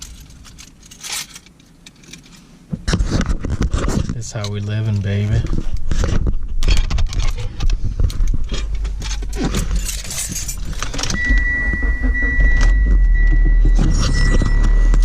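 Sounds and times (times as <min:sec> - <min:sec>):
keys jangling: 0:00.0 - 0:02.4, 0:09.0 - 0:11.1
low engine rumble: 0:07.3 - 0:15.0
steady high electronic tone: 0:11.1 - 0:15.0.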